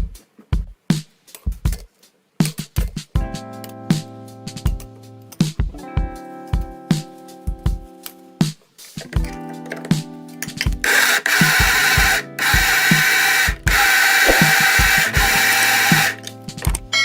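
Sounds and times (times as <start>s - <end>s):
background music with beat: 0.0s - 17.0s
electric blender running: 10.8s - 16.2s.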